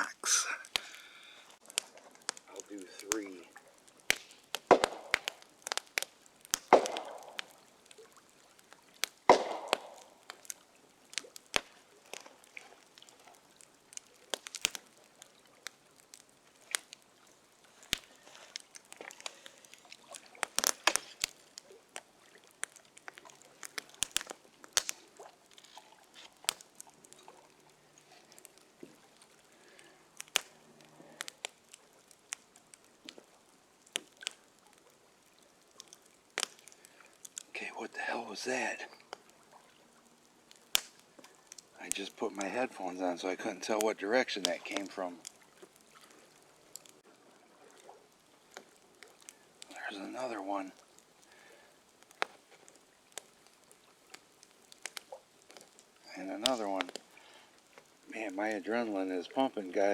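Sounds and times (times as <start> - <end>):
campfire crackling: 0.0 - 59.9
loud echoing wood knocks: 4.7 - 5.3, 6.7 - 7.4, 9.3 - 10.0.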